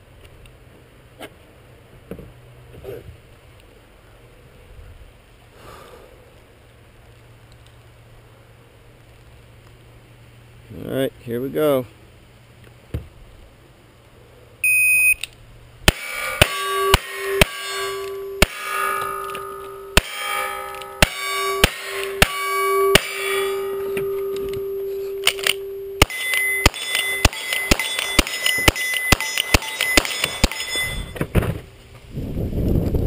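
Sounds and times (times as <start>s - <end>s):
shot timer beep: 14.6s - 15.2s, 21.0s - 31.2s
pistol shots: 15.9s - 24.2s, 25.2s - 31.0s
rifle shots: 15.9s - 24.2s, 25.2s - 31.2s
steel targets ringing: 15.9s - 31.3s.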